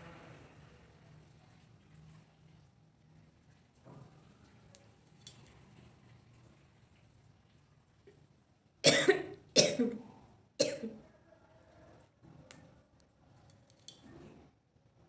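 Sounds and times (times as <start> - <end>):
woman coughing: 8.8 - 10.0, 10.6 - 11.0.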